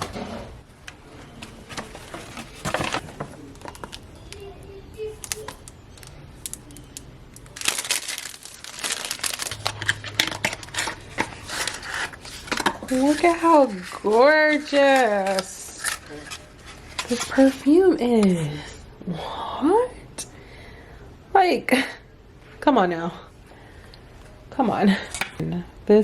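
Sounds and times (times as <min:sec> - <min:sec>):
paper and packaging crinkling: 0:01.2 - 0:18.0
clicks and crackles: 0:05.2 - 0:17.4.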